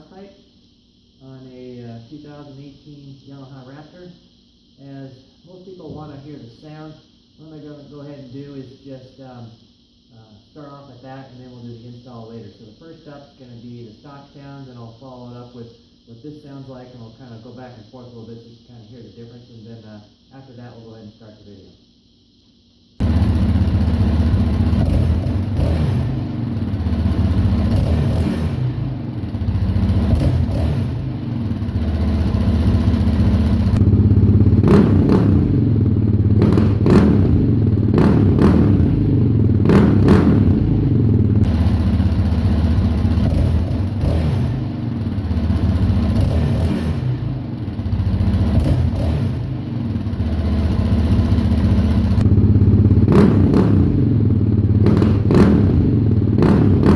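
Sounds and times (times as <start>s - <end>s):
exhaust crackles: 23.0s - 56.9s
quad engine revving: 23.0s - 56.9s.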